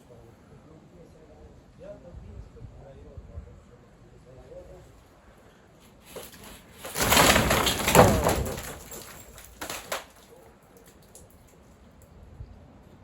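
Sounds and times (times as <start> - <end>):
wooden beams crashing down: 6.1 - 10.3
sharp wooden knocks: 6.9 - 10.1.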